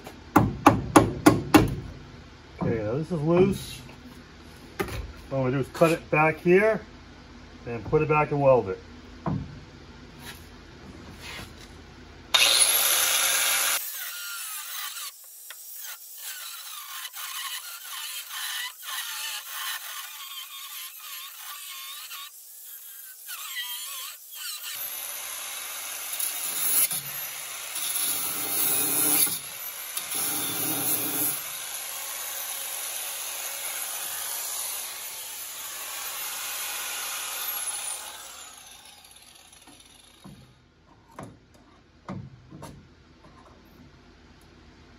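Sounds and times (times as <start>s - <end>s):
power tool cutting steel: 12.4s - 40.4s.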